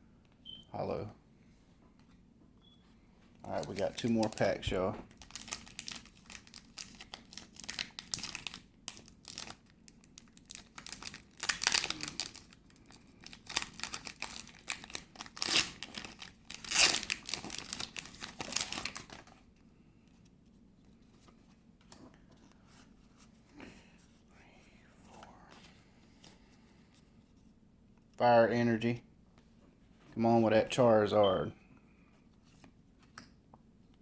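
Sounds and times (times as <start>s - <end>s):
foil wrapper crinkling and tearing: 3.5s - 19.4s.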